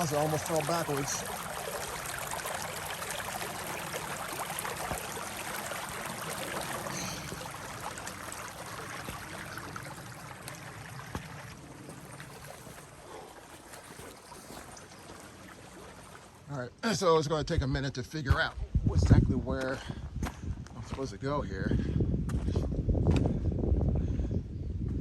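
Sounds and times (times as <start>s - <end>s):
creek water over rocks: 0.0s - 17.2s.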